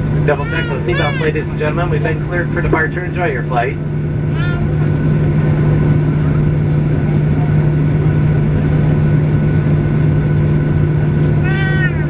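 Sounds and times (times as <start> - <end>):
airplane cabin engine drone: 0.0 - 12.0
person speaking: 0.3 - 1.6.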